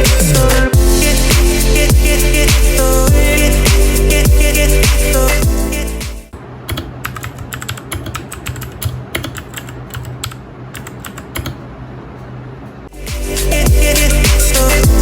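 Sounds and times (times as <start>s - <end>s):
background music: 0.0s - 6.3s, 12.9s - 15.0s.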